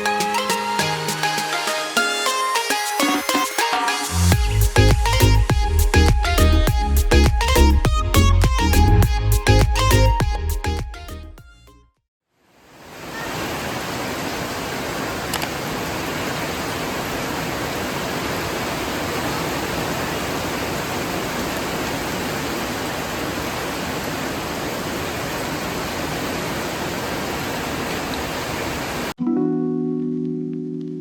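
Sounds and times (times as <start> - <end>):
heavy rain falling: 12.9 - 29.1
small click: 15.3 - 15.5.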